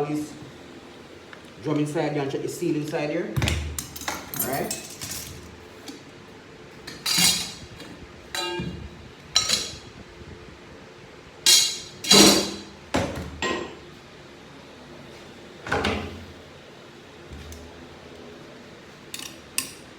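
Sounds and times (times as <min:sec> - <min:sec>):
metal parts clanking: 0:11.5 - 0:12.6.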